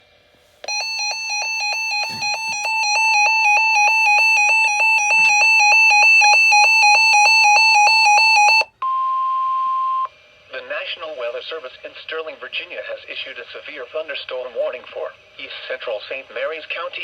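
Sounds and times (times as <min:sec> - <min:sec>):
harsh warbling electronic alarm: 0:00.7 - 0:08.7.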